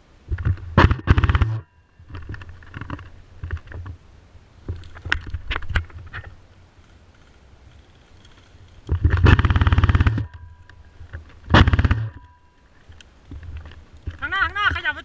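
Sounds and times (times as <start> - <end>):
airsoft guns firing: 0.8 - 1.6, 9.2 - 10.3, 11.5 - 12.2
clatter: 7.2 - 10.4.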